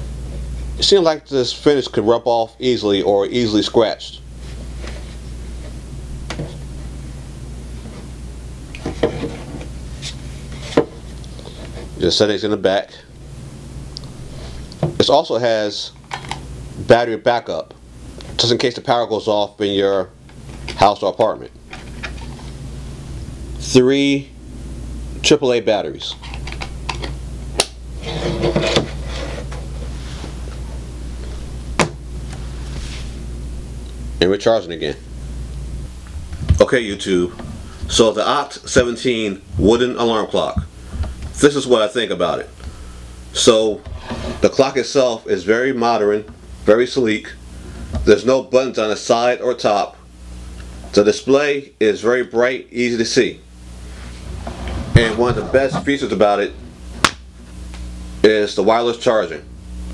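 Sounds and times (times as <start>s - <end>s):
low electrical hum: 0.0s - 59.9s.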